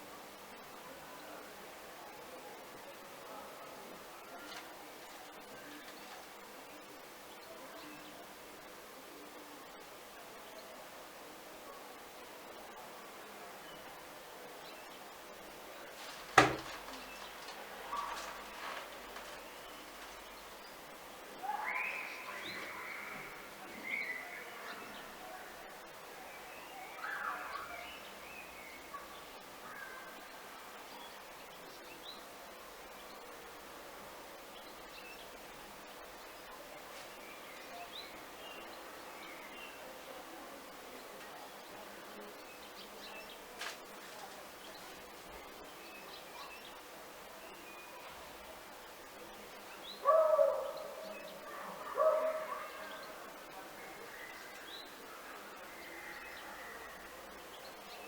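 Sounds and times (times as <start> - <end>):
steady background hiss: 0.0 - 58.0
birds chirping: 14.7 - 25.2, 44.4 - 58.0
dog barking: 50.0 - 50.8, 51.4 - 53.0.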